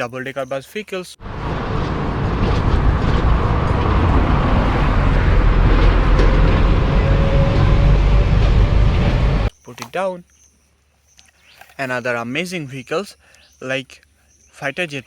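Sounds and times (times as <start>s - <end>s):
bus engine running: 1.2s - 9.5s.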